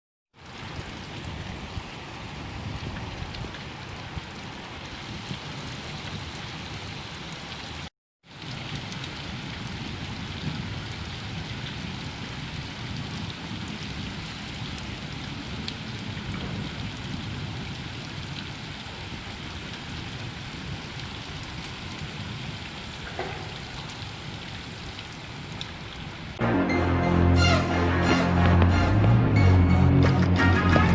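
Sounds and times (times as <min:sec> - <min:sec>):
steady rain falling: 0:00.4 - 0:29.9
music: 0:26.4 - 0:30.9.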